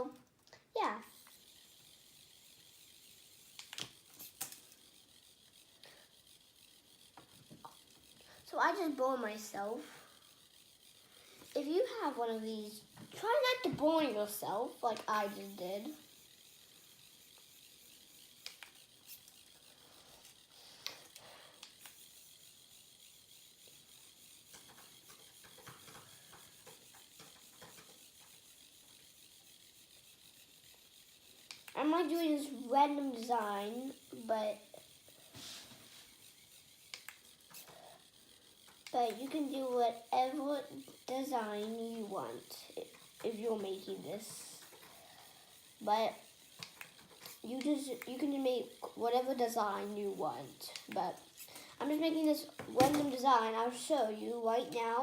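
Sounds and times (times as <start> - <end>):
faint clicks: 0.1 - 1.4, 18.4 - 22.1, 36.9 - 38.0, 50.6 - 51.8
pen nozzle scraping on paper: 35.1 - 36.1.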